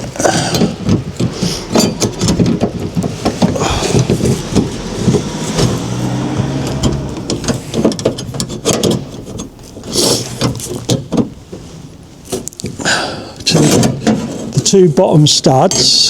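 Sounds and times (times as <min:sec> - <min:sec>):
low engine-like hum: 0:00.0 - 0:12.3.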